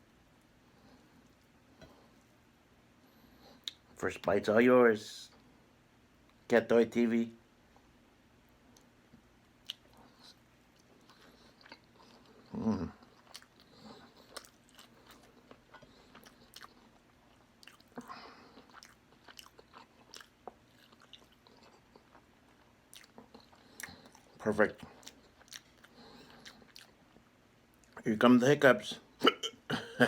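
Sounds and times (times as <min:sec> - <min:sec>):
person chewing wet mouth clicks: 0:09.6 - 0:12.3, 0:13.0 - 0:27.0.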